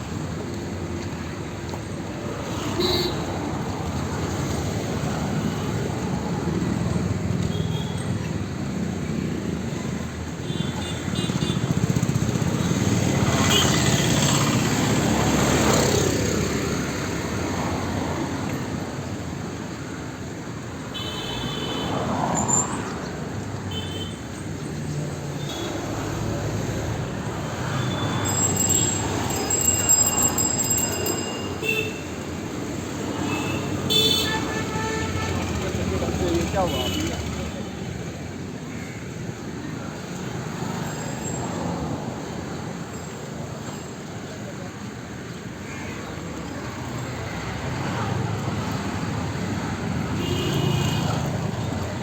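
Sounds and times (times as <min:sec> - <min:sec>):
passing vehicles: 0:00.0 - 0:52.0.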